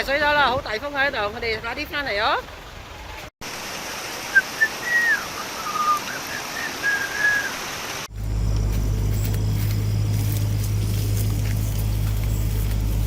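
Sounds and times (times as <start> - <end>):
bird whistling: 4.3 - 7.6
low engine drone: 8.1 - 13.0.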